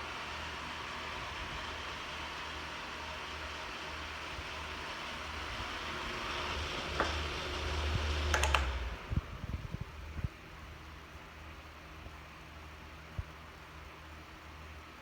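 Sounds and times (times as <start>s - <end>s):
fan whoosh and motor hum: 0.0s - 15.0s
fan switch clicks: 8.0s - 9.2s.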